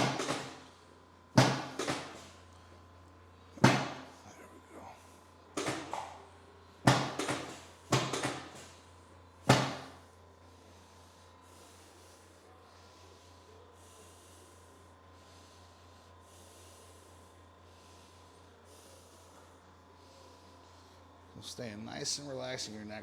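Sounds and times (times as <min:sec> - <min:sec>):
sharp knocks: 0:01.4 - 0:02.3, 0:03.6 - 0:04.2, 0:06.9 - 0:08.7, 0:09.5 - 0:10.0.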